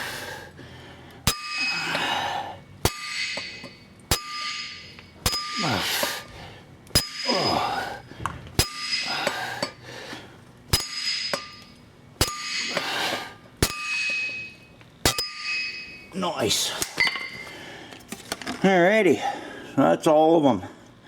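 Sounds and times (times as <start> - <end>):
hammer blows on steel: 2.8 - 6.3.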